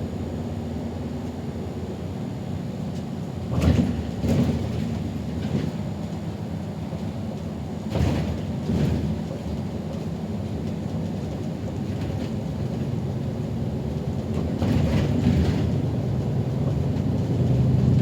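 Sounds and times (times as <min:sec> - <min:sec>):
bus engine and road rumble: 0:00.0 - 0:18.0
thumps and rattles over bumps: 0:03.5 - 0:06.3, 0:07.0 - 0:13.0, 0:14.2 - 0:18.0.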